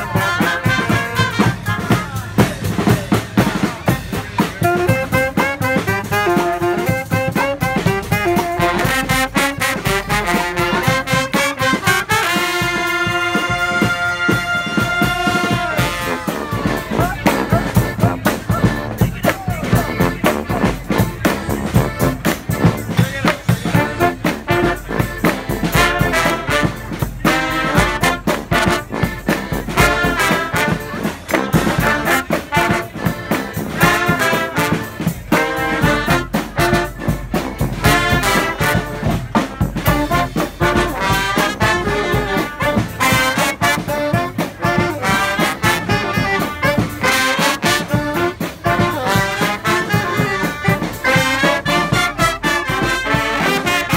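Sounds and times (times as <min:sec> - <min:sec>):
brass marching band playing: 0:00.0 - 0:53.9
driving drum beat: 0:00.0 - 0:53.9.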